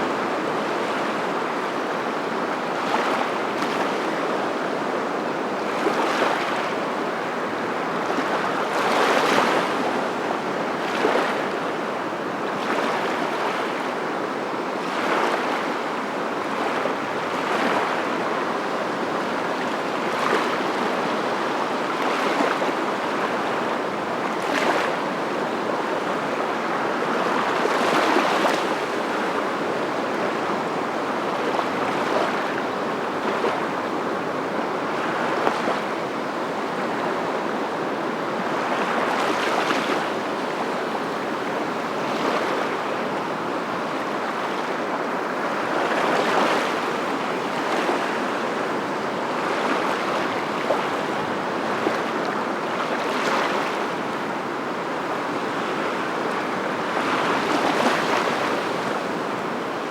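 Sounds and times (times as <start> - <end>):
rushing water: 0.0 - 59.9.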